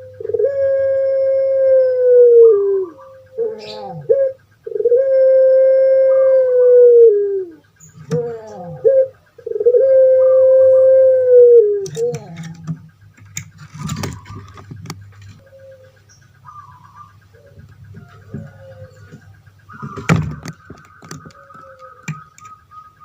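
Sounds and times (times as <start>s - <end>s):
dove cooing: 0.0s - 23.0s
sharp clicks: 11.8s - 15.4s, 19.1s - 22.7s.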